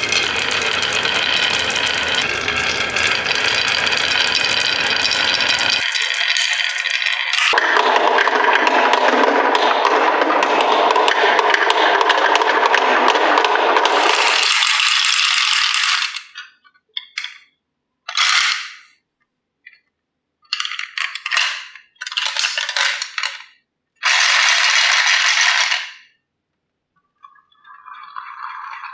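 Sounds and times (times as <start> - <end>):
marbles rattling down a marble run: 0.0 - 7.6, 9.4 - 16.4, 18.1 - 18.9, 20.5 - 26.0.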